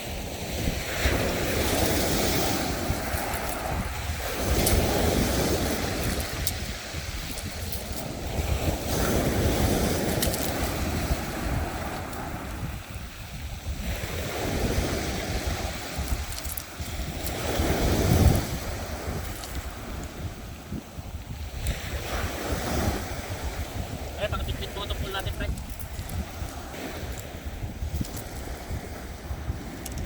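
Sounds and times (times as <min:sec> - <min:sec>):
sea waves surging: 0:00.0 - 0:30.0
wind buffeting the microphone: 0:00.0 - 0:30.0.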